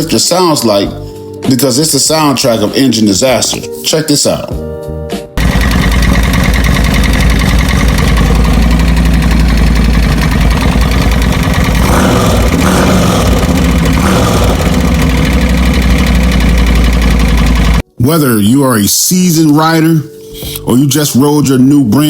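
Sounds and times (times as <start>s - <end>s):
engine running: 5.4s - 17.8s
rapid valve ticking: 5.4s - 17.8s.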